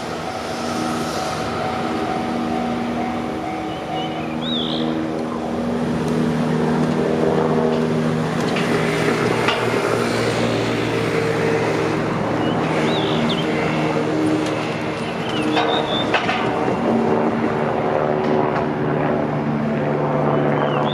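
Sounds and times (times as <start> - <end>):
train wheels rushing on rail: 0.0 - 17.0
level crossing warning alarm: 1.4 - 5.6.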